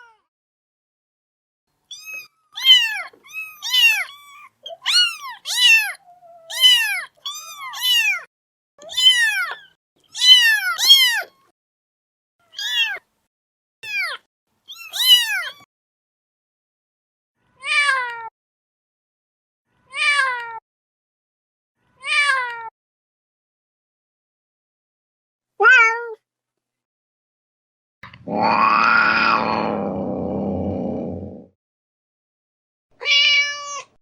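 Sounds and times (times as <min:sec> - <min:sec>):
cat meowing: 0:01.9 - 0:08.3, 0:08.9 - 0:11.4, 0:12.5 - 0:13.0, 0:13.8 - 0:15.6, 0:25.6 - 0:26.2, 0:28.0 - 0:31.5, 0:33.0 - 0:34.0.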